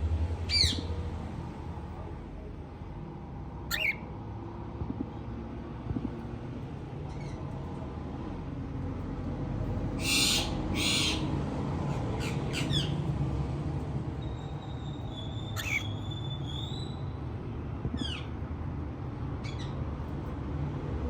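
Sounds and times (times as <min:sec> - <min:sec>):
low background hum: 0:00.0 - 0:21.0
cockatiel screeching and chirping: 0:00.5 - 0:00.8, 0:03.7 - 0:04.0, 0:10.0 - 0:11.3, 0:14.3 - 0:17.0.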